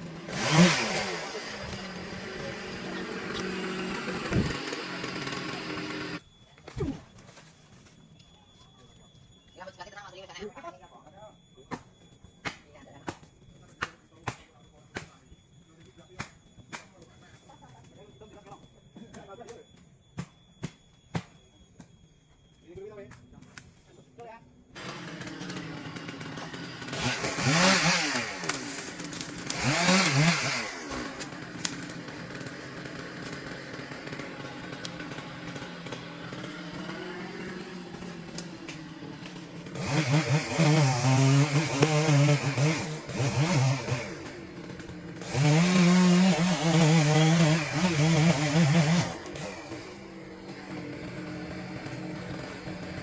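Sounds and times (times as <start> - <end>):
chainsaw idling and revving: 0.0 - 6.2, 24.7 - 53.0.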